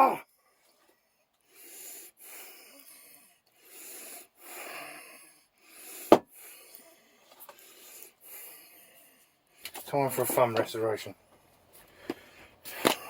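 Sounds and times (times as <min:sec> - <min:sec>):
man breathing heavily: 0:00.8 - 0:09.8, 0:11.7 - 0:13.0.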